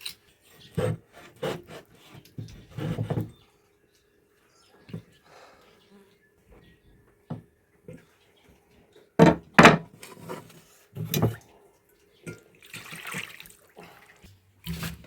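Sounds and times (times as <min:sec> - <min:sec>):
water splashing and pouring: 0:12.6 - 0:15.0.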